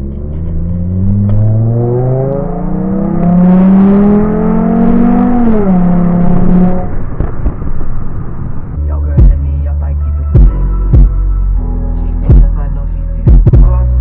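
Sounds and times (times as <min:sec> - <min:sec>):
car engine accelerating: 0:00.0 - 0:09.7.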